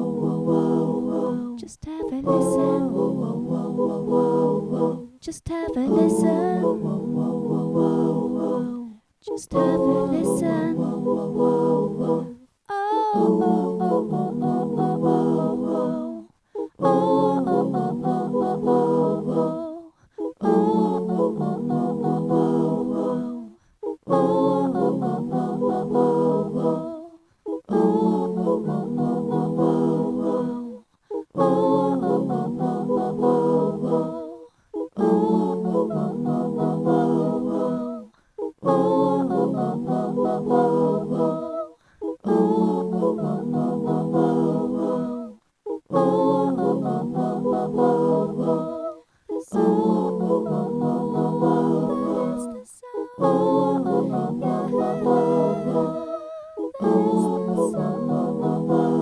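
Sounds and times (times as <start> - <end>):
voices humming in harmony: 2.2 - 5.1, 9.5 - 12.4, 13.1 - 16.2, 16.8 - 19.6, 20.4 - 23.4, 24.0 - 27.0, 27.7 - 30.8, 31.4 - 34.3, 35.0 - 38.0, 38.7 - 41.6, 46.0 - 49.0, 49.6 - 52.6, 53.2 - 59.0.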